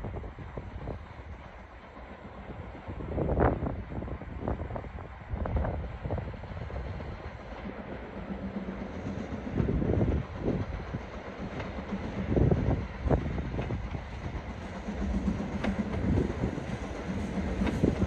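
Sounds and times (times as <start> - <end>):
train rumble: 0.0 - 18.0.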